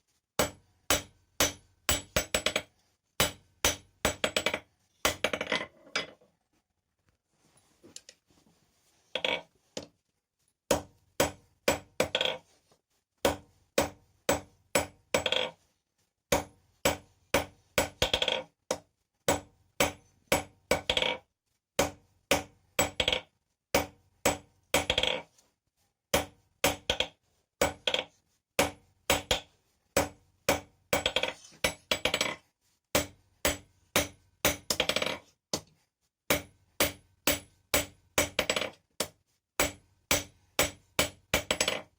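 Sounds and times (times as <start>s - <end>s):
hammer striking steel on anvil: 0.4s - 2.6s, 36.3s - 41.8s.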